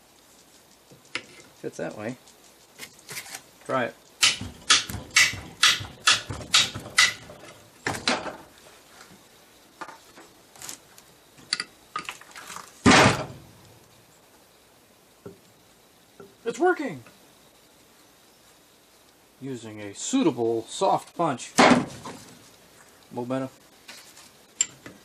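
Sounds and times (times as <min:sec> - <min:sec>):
hammer striking metal punch: 0:04.2 - 0:07.3.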